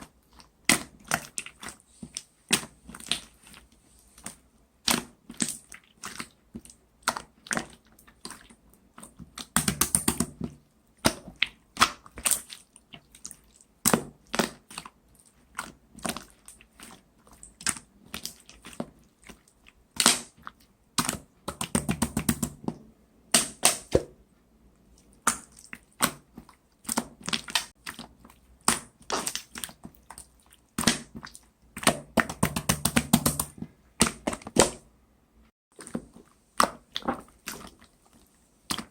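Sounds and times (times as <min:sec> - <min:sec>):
slime squishing with sticky clicks: 0:00.0 - 0:35.0, 0:35.8 - 0:38.9.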